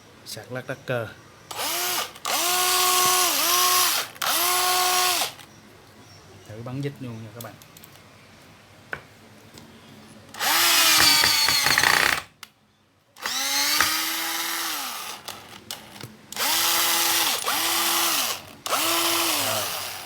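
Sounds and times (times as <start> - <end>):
cordless drill motor whirring: 1.5 - 5.5, 10.4 - 12.3, 13.2 - 20.0.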